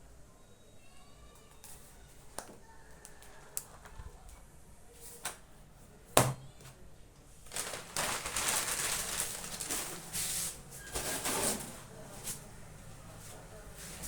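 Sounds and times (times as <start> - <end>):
rustling of books and packaging: 7.4 - 14.0.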